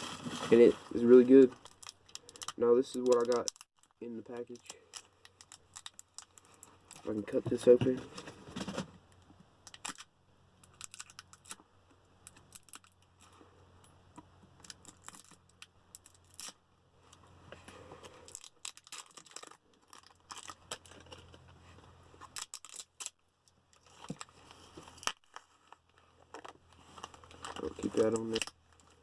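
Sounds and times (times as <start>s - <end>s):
small clicks and scrapes on packaging: 14.6s - 29.0s.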